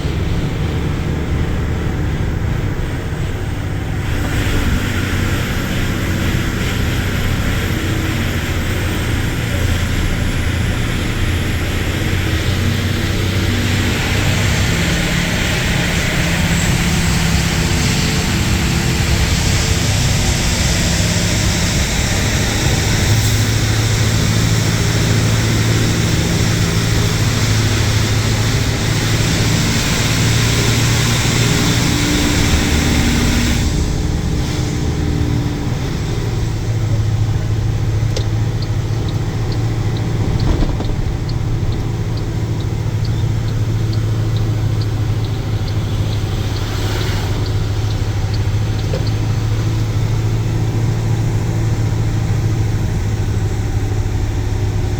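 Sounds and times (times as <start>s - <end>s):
car engine hum: 0.0s - 54.9s
rain and tyre spray hiss: 3.0s - 51.8s
faint regular ticking: 37.6s - 50.1s.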